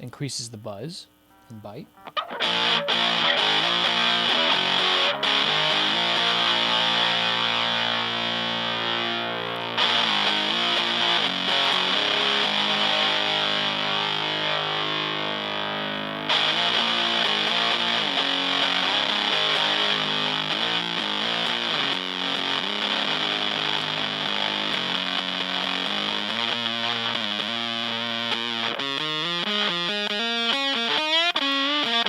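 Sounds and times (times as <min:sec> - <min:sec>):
fuzzed electric guitar chords: 0:01.4 - 0:32.0.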